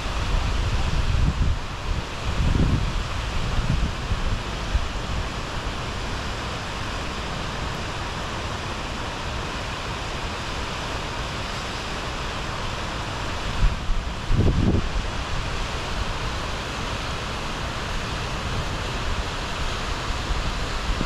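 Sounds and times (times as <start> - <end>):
wind buffeting microphone: 0.0 - 5.0, 13.6 - 15.2.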